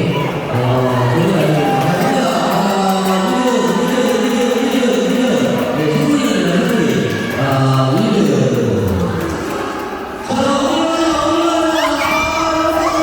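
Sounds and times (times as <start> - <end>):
loud singing voices with music: 10.2 - 13.0.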